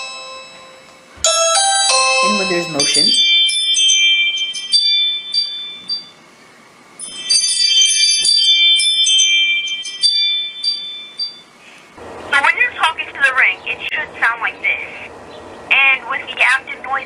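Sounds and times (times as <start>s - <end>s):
doorbell chime melody: 0.0s - 6.2s, 7.0s - 11.5s.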